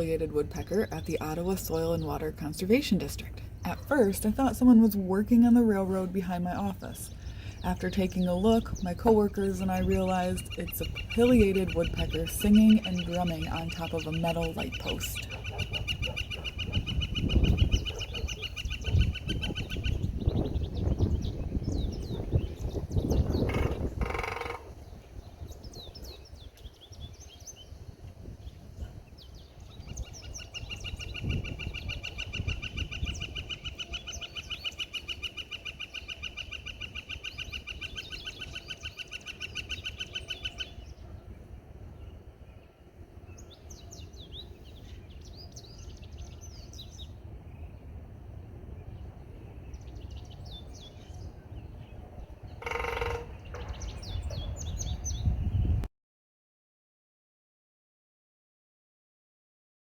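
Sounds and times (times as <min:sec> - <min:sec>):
small birds chirping: 0:00.0 - 0:55.8
woodpecker drumming: 0:09.5 - 0:20.0, 0:23.5 - 0:24.8, 0:52.6 - 0:53.9.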